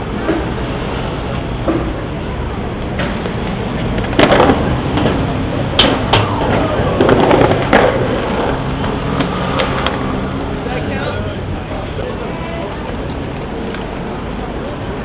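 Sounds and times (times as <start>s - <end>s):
skateboard wheels rolling: 0.0s - 15.0s
skateboard clacking on ground: 2.8s - 10.9s.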